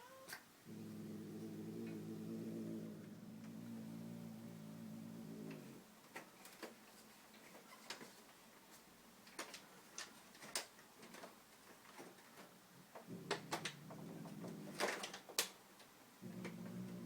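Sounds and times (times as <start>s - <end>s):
air conditioner clicks and ticks: 5.5s - 16.8s.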